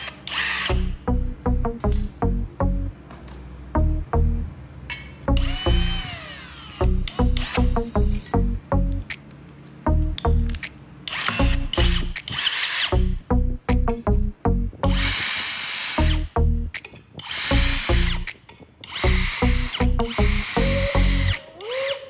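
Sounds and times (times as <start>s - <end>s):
power tool whine: 5.4s - 7.7s, 18.9s - 22.0s.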